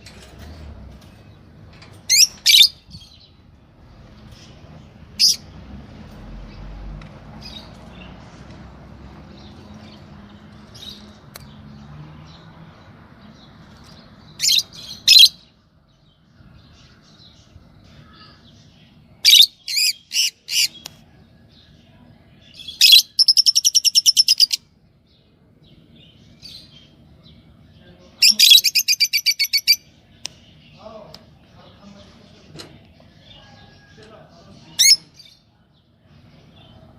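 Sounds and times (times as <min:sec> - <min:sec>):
lovebirds calling: 0:00.0 - 0:05.6, 0:07.4 - 0:36.9
lovebirds chattering trills: 0:01.5 - 0:03.4, 0:27.7 - 0:35.4.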